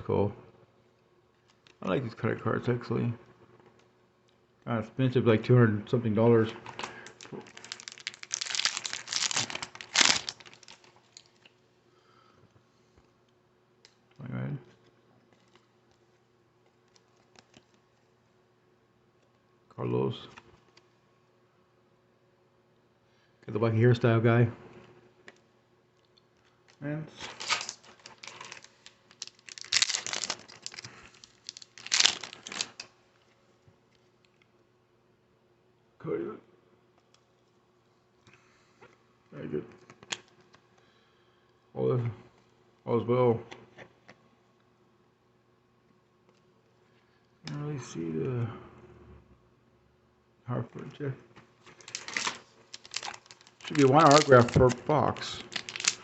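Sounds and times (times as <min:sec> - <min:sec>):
foil wrapper crinkling: 0:06.7 - 0:11.5, 0:27.2 - 0:32.9, 0:51.6 - 0:56.0.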